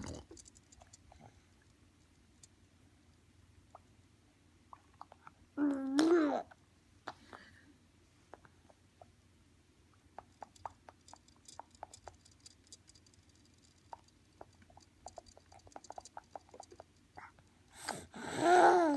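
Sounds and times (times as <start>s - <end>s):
baby babbling: 5.6s - 6.6s, 18.2s - 18.9s
baby mouth clicking: 10.2s - 12.4s, 13.9s - 17.4s.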